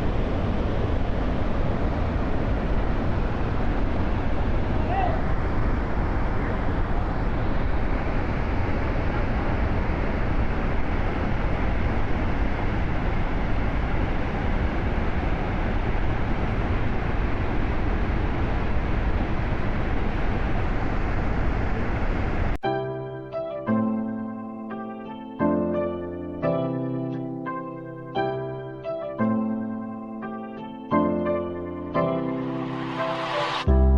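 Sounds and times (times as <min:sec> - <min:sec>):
waterfall rushing: 0:32.1 - 0:33.7.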